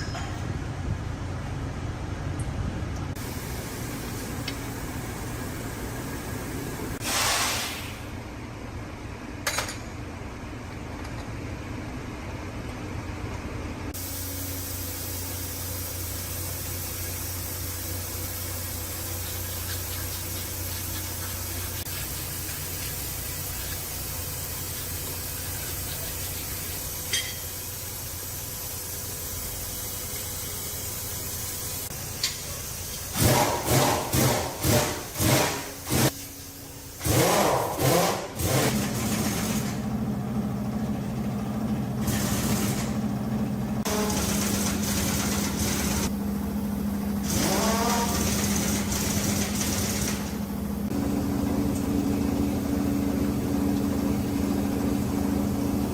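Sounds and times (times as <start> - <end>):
steady low hum: 8.0 - 32.6.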